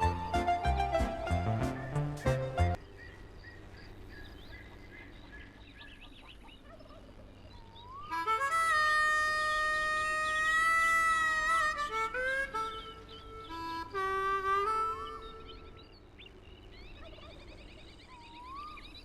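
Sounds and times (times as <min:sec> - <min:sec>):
instrument playing notes: 0:00.0 - 0:02.8, 0:08.1 - 0:15.8.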